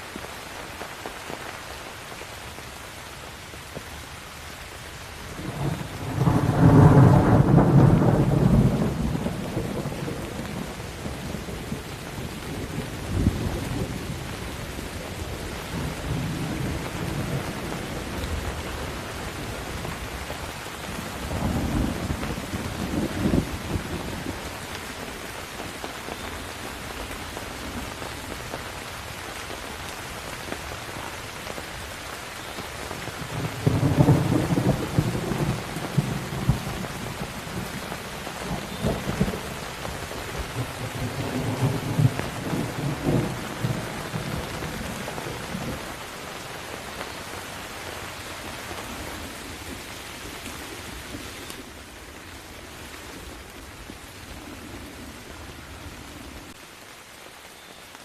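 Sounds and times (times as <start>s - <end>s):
heavy rain: 0.0s - 58.0s
rolling thunder: 5.4s - 14.4s, 33.2s - 45.9s.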